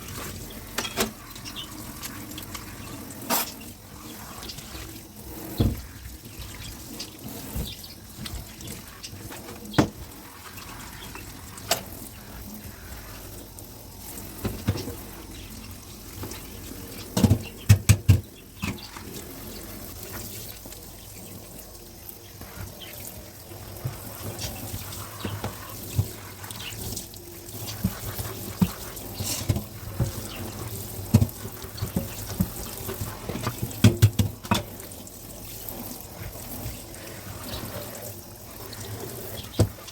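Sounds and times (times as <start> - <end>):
kitchen tap running into sink: 0.0 - 39.9
dishes knocking and clinking: 17.2 - 18.8.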